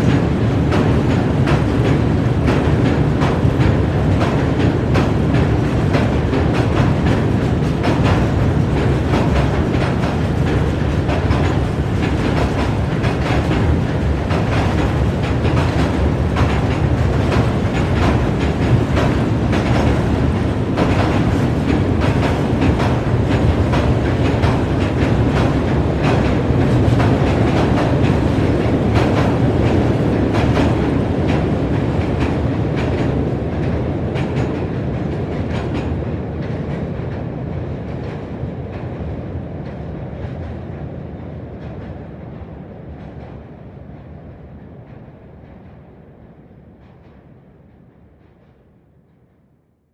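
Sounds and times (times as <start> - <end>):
wheels clacking over rail joints: 0.0 - 37.2
train deep rumble: 0.0 - 48.6.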